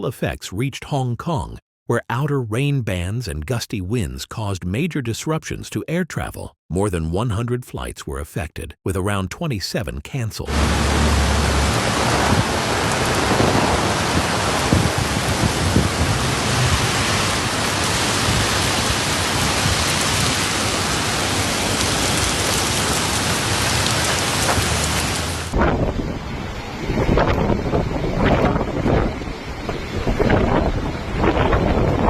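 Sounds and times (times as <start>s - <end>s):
heavy rain pouring: 10.5s - 32.0s
wind buffeting microphone: 11.5s - 20.4s, 24.2s - 32.0s.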